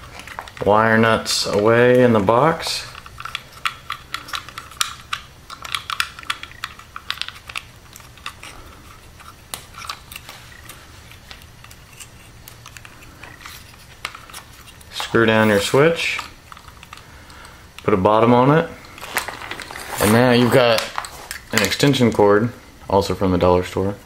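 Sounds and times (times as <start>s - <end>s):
wires and wire nuts clicking: 0.0s - 17.9s.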